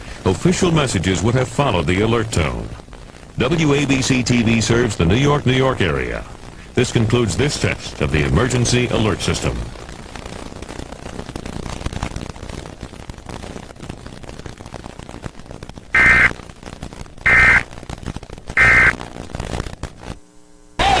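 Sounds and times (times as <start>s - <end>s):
steady hiss: 0.0s - 14.1s, 14.7s - 20.2s
buzzing digital tone bursts: 16.0s - 16.3s, 17.3s - 17.6s, 18.6s - 18.9s.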